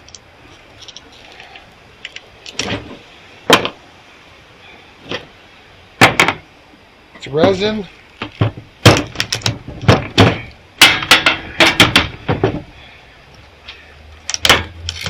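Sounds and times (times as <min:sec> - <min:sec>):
tool knocking and scraping: 0:08.2 - 0:12.7.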